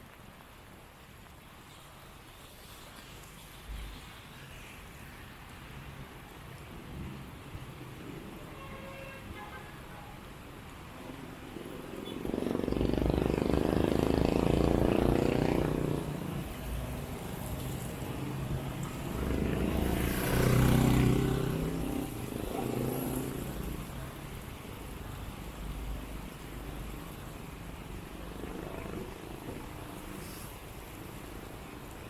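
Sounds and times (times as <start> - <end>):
motor vehicles passing: 11.2 - 31.6.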